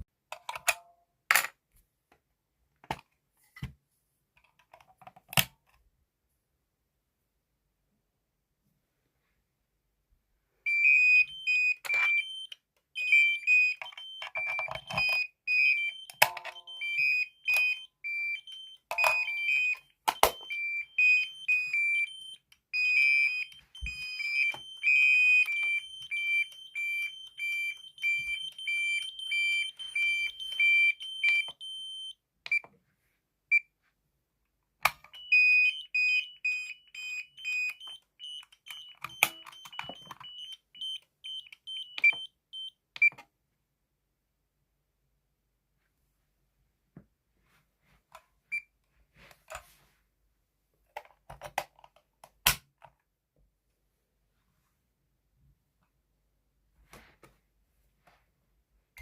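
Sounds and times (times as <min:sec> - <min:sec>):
two-pitch alarm beeping: 0:10.7 - 0:32.2, 0:35.2 - 0:42.7.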